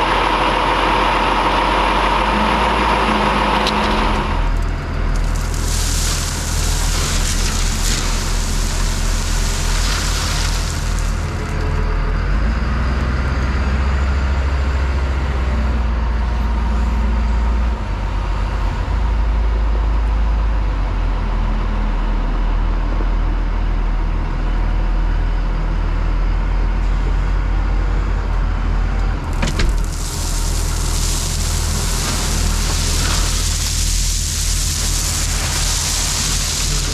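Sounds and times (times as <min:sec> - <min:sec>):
truck engine running: 0:00.0 - 0:21.4, 0:25.5 - 0:36.9
loud hiss: 0:05.2 - 0:11.5, 0:29.3 - 0:36.9.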